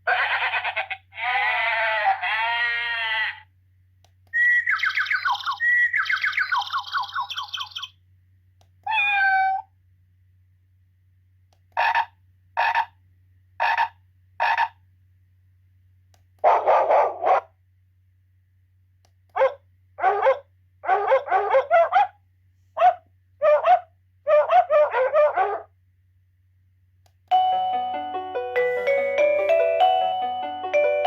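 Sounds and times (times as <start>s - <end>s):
doorbell ringtone clips: 27.3s - 31.0s.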